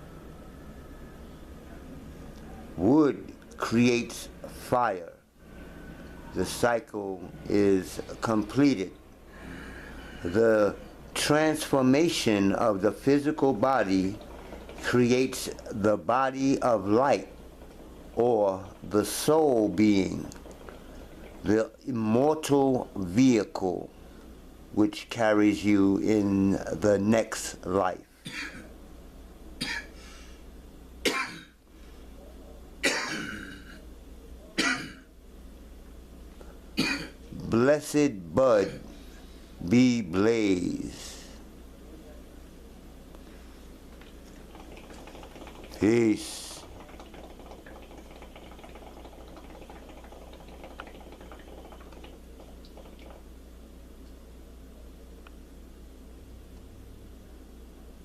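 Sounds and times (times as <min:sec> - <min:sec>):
liquid bubbling with pops: 0:14.0 - 0:14.9, 0:20.3 - 0:21.4, 0:44.0 - 0:45.8, 0:46.5 - 0:53.3
person coughing harshly: 0:28.2 - 0:28.7, 0:29.6 - 0:30.0, 0:31.1 - 0:31.6, 0:32.8 - 0:33.8, 0:34.6 - 0:35.1, 0:36.8 - 0:37.2.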